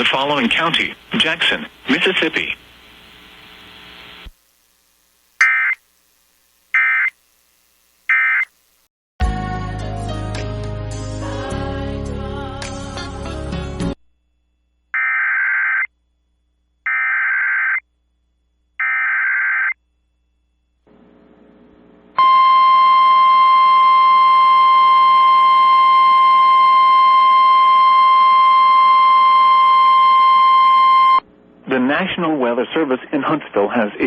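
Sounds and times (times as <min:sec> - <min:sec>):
warbling data tone bursts: 0:05.4 - 0:05.8, 0:06.7 - 0:07.2, 0:08.1 - 0:08.6.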